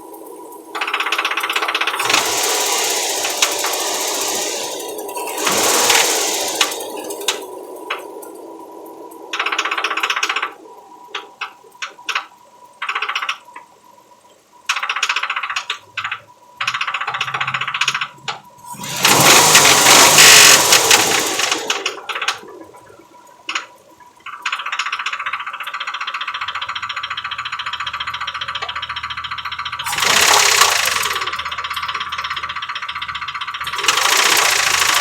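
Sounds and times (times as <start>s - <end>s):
engine mechanical clatter: 0.8s - 8.0s, 16.6s - 22.4s, 24.9s - 35.0s.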